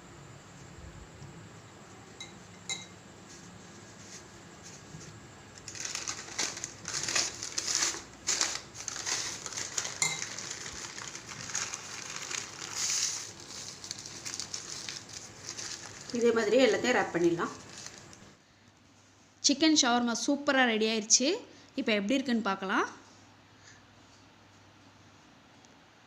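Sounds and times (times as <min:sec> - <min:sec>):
paper crinkling and rustling: 0:03.3 - 0:18.4.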